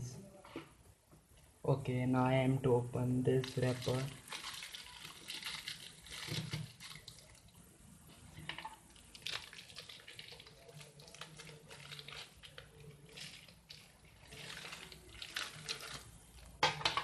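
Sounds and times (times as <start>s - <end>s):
plastic wrapper crinkling: 3.4s - 7.5s, 8.5s - 16.6s.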